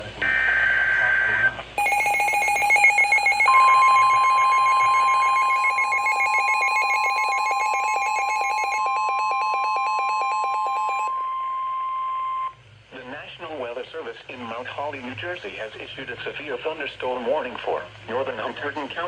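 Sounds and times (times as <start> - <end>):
steady high tone: 0.3 - 12.6
fast-pulsing electronic alarm tone: 0.5 - 12.5.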